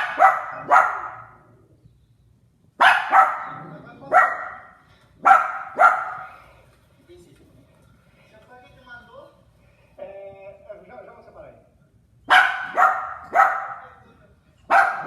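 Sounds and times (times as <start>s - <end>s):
dog barking: 0.0s - 1.5s, 2.8s - 6.4s, 12.3s - 14.0s, 14.7s - 15.0s.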